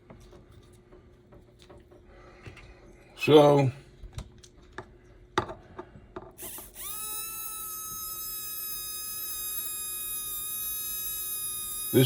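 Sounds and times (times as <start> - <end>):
electric motor whining: 6.4 - 12.0.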